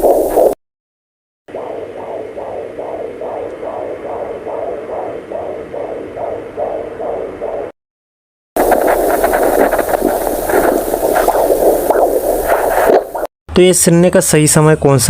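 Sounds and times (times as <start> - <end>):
fetal heartbeat on doppler speaker: 0.0 - 0.6, 1.5 - 7.8, 8.6 - 13.3.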